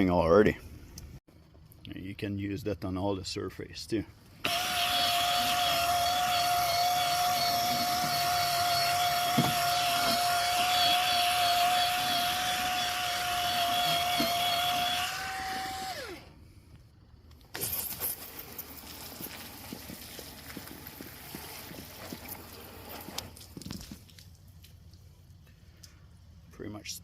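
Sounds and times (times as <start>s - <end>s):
power scrubber motor whine: 4.4s - 16.3s.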